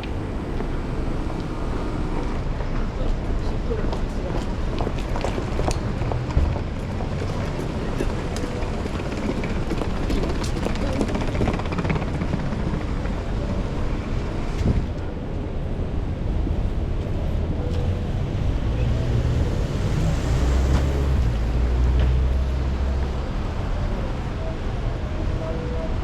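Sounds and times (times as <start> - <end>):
traffic noise: 0.0 - 26.0.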